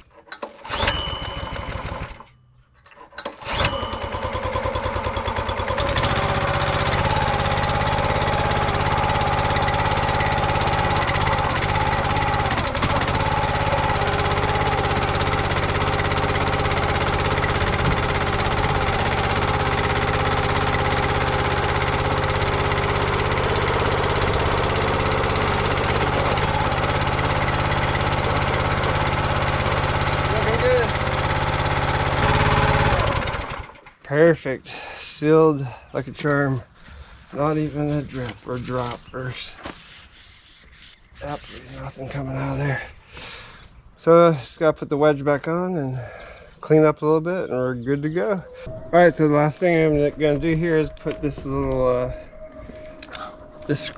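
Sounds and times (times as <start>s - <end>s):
small gasoline engine running: 0.0s - 34.0s.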